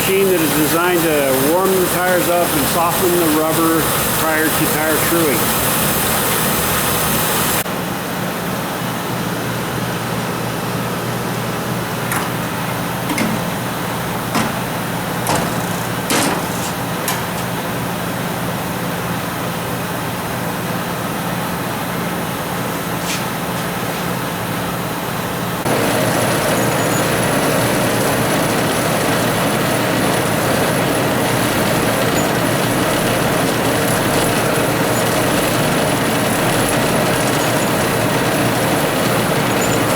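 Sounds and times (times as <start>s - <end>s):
tire truing machine humming: 0.0s - 7.6s, 11.3s - 18.0s, 25.6s - 39.9s.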